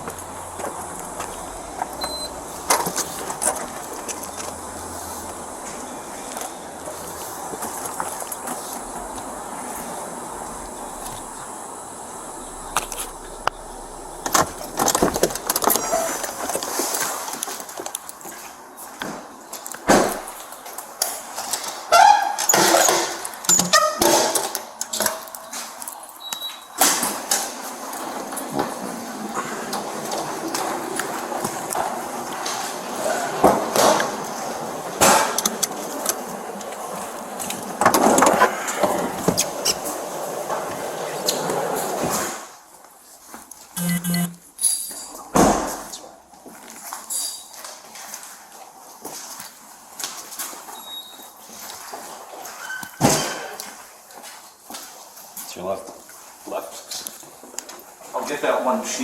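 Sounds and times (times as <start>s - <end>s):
steady background noise: 0.0s - 45.0s
sharp clicks: 43.8s - 44.4s.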